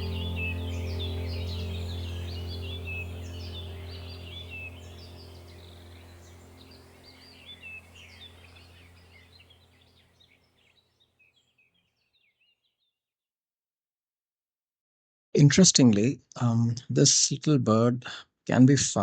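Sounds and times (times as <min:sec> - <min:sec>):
low steady hum: 0:00.0 - 0:10.6
small birds chirping: 0:00.0 - 0:13.0.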